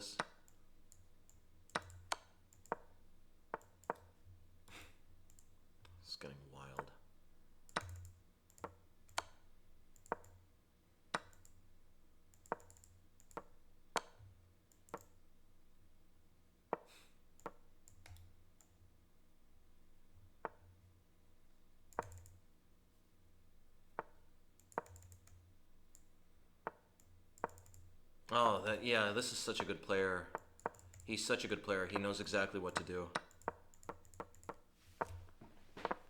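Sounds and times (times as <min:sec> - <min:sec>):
faint sharp clicks: 0:00.0 - 0:06.0, 0:06.6 - 0:10.5, 0:11.1 - 0:11.6, 0:12.3 - 0:15.2, 0:21.9 - 0:22.4, 0:23.9 - 0:36.0.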